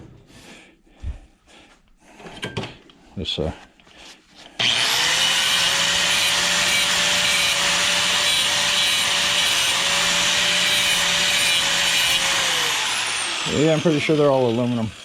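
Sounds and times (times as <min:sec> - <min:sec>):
grinder grinding wire: 0:04.6 - 0:15.0.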